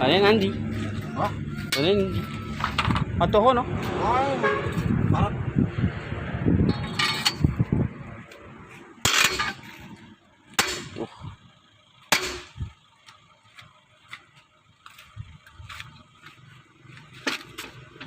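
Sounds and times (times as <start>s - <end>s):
metal strikes on truck wheel: 6.6s - 7.7s, 9.0s - 11.1s, 12.1s - 12.6s.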